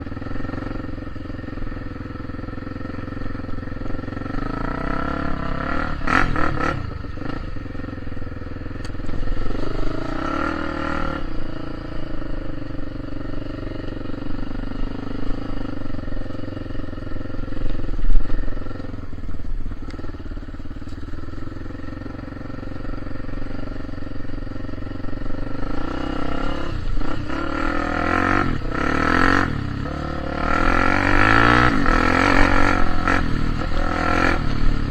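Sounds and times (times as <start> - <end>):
vehicle engine revving: 8.9 - 12.0, 25.2 - 34.9.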